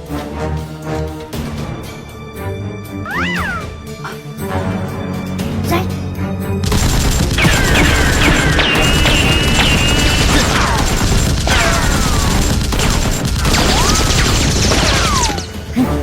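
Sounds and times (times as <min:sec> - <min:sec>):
background music: 0:00.0 - 0:16.0
gunfire-like cracks and crashes: 0:06.6 - 0:15.7.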